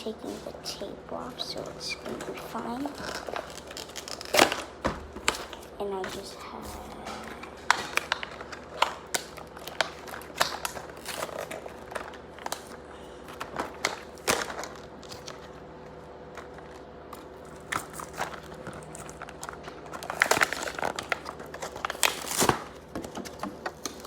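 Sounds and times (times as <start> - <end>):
packaging crinkling: 0.3 - 24.0
packaging snap: 3.0 - 6.2, 7.3 - 15.5, 16.3 - 24.0.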